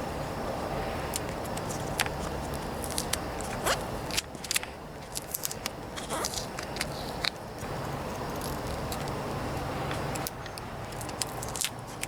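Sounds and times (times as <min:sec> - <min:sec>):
tape clicking and crinkling: 0:01.1 - 0:12.0
duct tape ripping off roll: 0:02.8 - 0:07.3.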